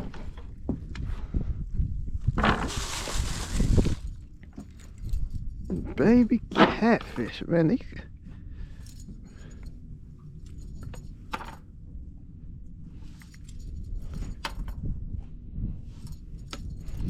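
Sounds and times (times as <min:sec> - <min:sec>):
wind rumbling on microphone: 0:00.0 - 0:06.6, 0:11.9 - 0:17.0.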